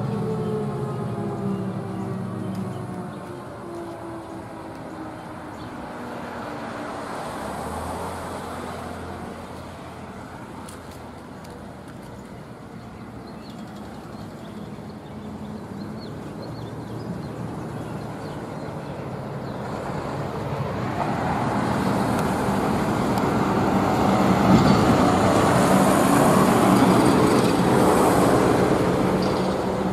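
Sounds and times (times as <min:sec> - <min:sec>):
vehicle passing by: 0:00.0 - 0:10.6, 0:16.8 - 0:29.9.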